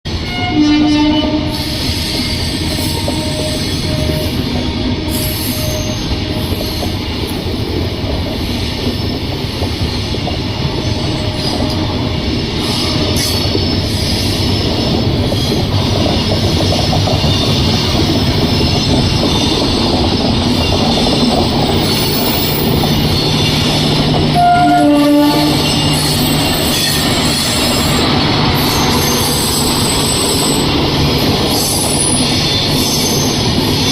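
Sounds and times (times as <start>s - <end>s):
train wheels rumbling on rails: 0.1s - 33.9s
train horn: 0.2s - 6.9s, 23.2s - 28.1s.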